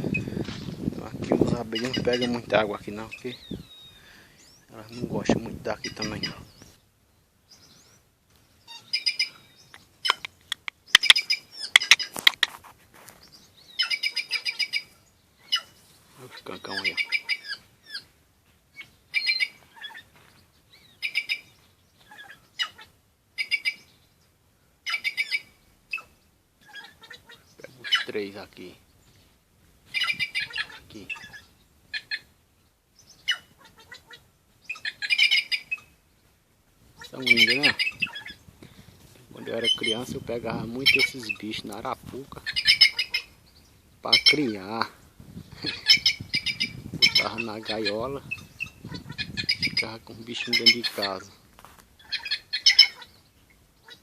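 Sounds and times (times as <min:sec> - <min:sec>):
sharp clicks: 0:09.7 - 0:12.5
jays calling harshly: 0:10.0 - 0:12.7, 0:13.8 - 0:18.1, 0:24.8 - 0:28.5, 0:29.8 - 0:32.3, 0:33.2 - 0:36.0, 0:36.9 - 0:43.4, 0:44.0 - 0:51.4, 0:52.0 - 0:53.2.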